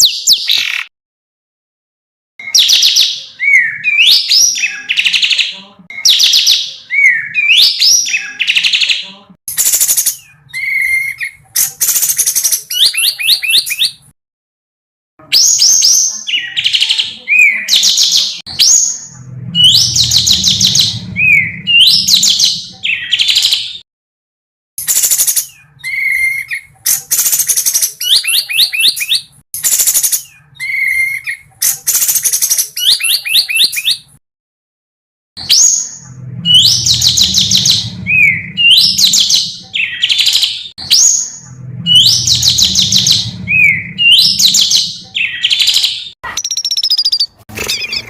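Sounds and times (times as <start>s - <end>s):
songbird trilling: 41.0s - 48.0s.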